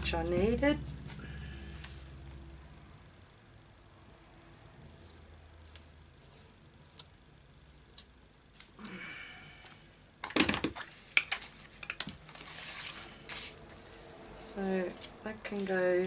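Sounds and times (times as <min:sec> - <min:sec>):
paper rustling: 0:11.3 - 0:14.0.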